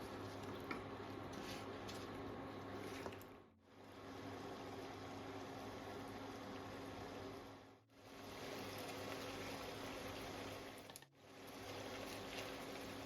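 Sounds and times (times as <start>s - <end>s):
meat sizzling in oil: 8.0s - 13.0s.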